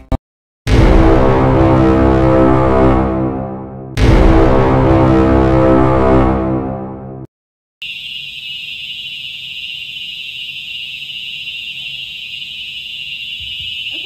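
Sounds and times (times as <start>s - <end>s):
fire alarm tone: 7.8s - 14.0s.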